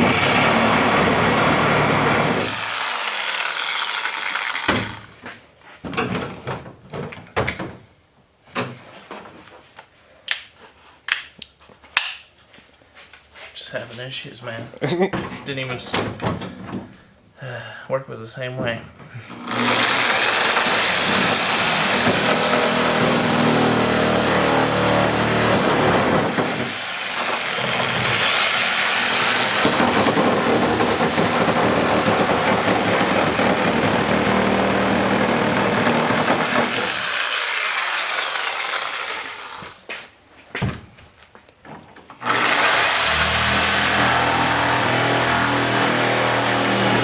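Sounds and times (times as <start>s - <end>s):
reciprocating saw cutting: 0.0s - 5.0s, 19.4s - 39.8s, 42.2s - 47.0s.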